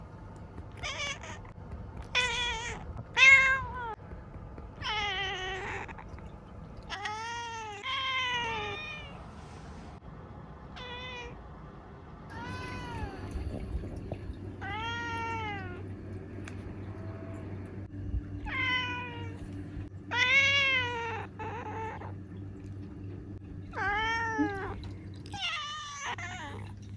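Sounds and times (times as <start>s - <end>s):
cat meowing: 0.8s - 4.0s, 4.8s - 6.2s, 6.9s - 9.2s, 10.8s - 11.4s, 20.1s - 22.1s, 23.8s - 24.8s.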